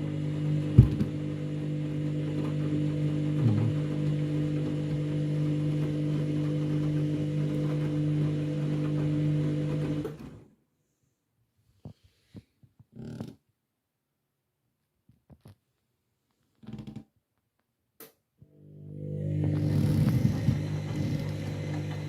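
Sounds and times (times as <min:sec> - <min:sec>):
washing machine motor humming: 0:00.0 - 0:10.4, 0:18.5 - 0:22.0.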